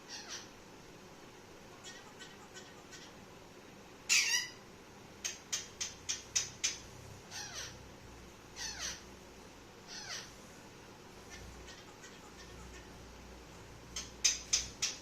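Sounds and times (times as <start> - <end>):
parrot squawking: 0.0 - 0.5, 1.7 - 3.2, 4.1 - 4.6, 5.2 - 7.8, 8.6 - 9.1, 9.9 - 10.4, 11.3 - 13.0.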